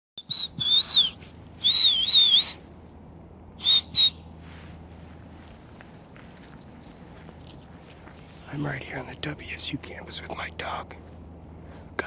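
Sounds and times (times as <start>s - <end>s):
high breathy whistle: 0.2s - 2.7s, 3.6s - 4.7s.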